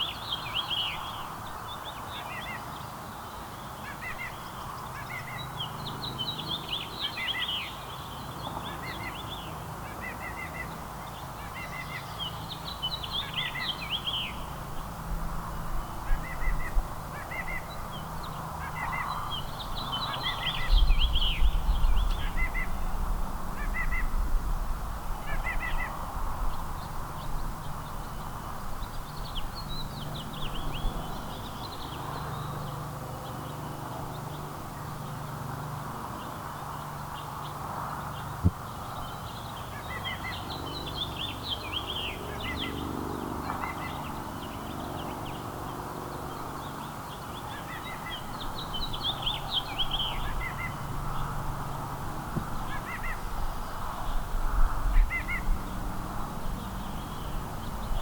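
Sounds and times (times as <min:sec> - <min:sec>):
songbirds chirping: 0:25.2 - 0:58.0.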